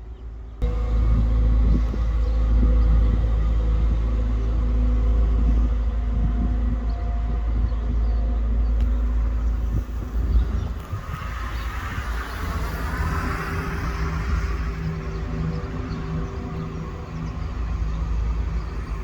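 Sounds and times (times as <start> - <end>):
train rumbling past: 0.0 - 19.0
humming tones: 0.3 - 11.1.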